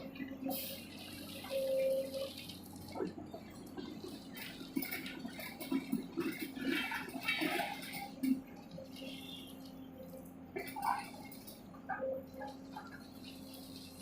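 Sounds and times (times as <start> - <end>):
excavator diesel engine hum: 0.0 - 14.0
clatter: 3.4 - 9.5.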